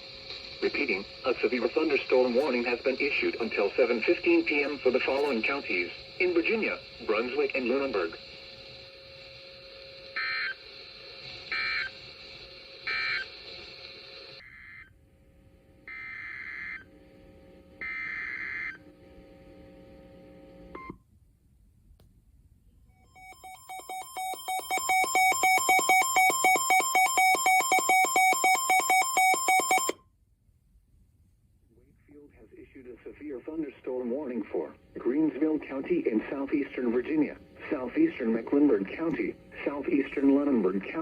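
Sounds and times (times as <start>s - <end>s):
digital data tone bursts: 23.2s - 30.0s
pulsing two-tone alert signal: 23.2s - 30.0s.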